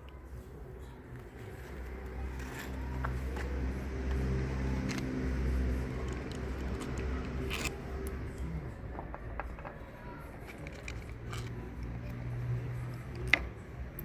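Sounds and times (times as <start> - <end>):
low engine-like hum: 0.0 - 14.0.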